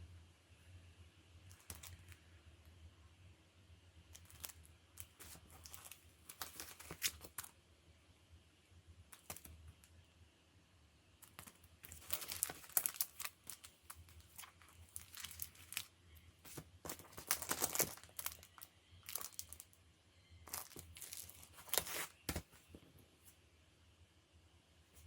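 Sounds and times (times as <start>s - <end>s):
packaging crinkling and tearing: 4.2s - 7.5s, 11.2s - 15.9s, 16.5s - 19.7s, 20.5s - 22.5s.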